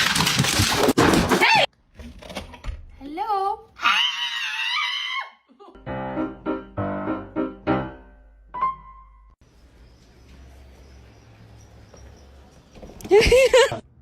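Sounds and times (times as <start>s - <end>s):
piano notes: 5.8s - 9.4s.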